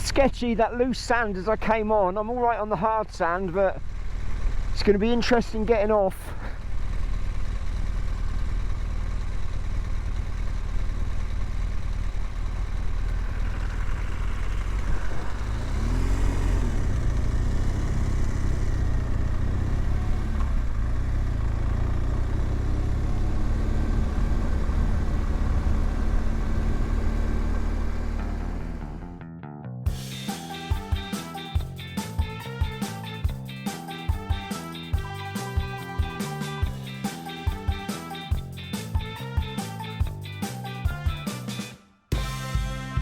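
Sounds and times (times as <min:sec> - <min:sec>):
motorcycle engine revving: 0:03.8 - 0:29.2.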